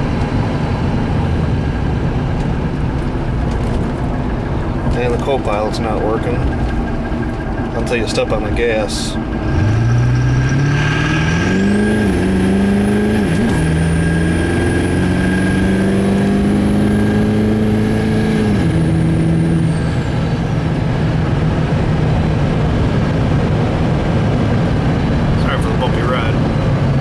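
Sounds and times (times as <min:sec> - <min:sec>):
turbocharger whistling: 0:00.0 - 0:20.5
diesel pickup accelerating: 0:00.0 - 0:27.0.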